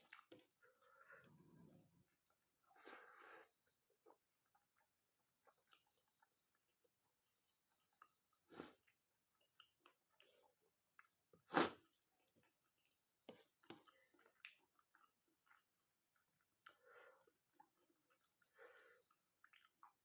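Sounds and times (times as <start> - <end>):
person chewing: 0.0 - 2.8, 7.7 - 20.0.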